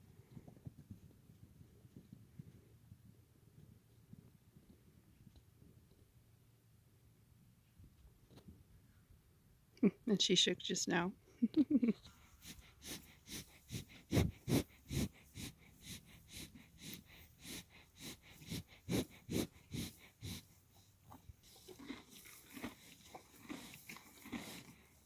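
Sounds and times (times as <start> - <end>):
horse breathing and crunching: 0.0 - 3.3, 12.0 - 25.0.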